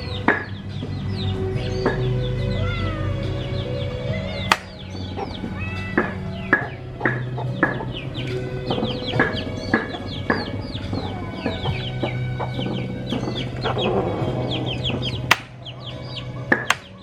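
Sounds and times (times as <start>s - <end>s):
chickens clucking: 0.0s - 17.0s
chicks peeping: 0.0s - 17.0s
steady low hum: 0.0s - 17.0s
sharp click: 4.5s - 4.8s.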